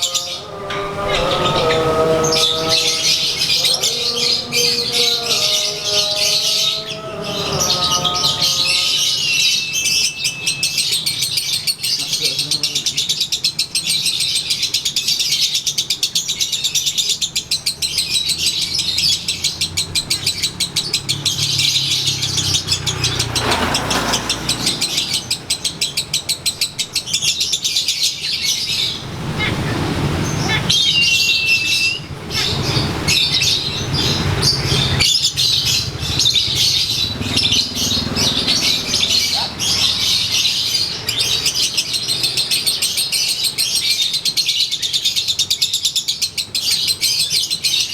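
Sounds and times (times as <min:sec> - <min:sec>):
lovebird chattering chirps: 0:00.0 - 0:47.9
bird whistle: 0:05.2 - 0:11.8, 0:30.3 - 0:42.0.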